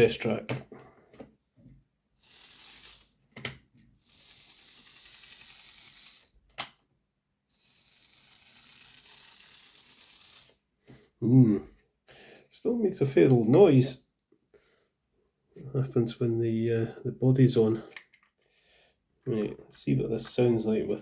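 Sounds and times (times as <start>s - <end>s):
model train motor grinding rattle: 2.2s - 3.1s, 4.0s - 6.3s, 7.5s - 10.6s.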